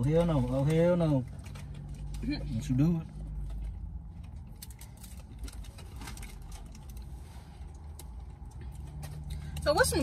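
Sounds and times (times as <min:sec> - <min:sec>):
low hum inside car: 0:00.0 - 0:10.0.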